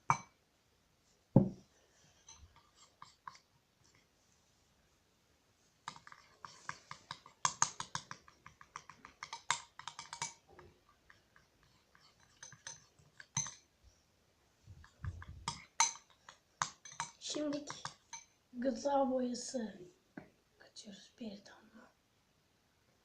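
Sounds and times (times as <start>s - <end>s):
utensil stirring glue in container: 5.8s - 13.7s, 14.8s - 18.4s.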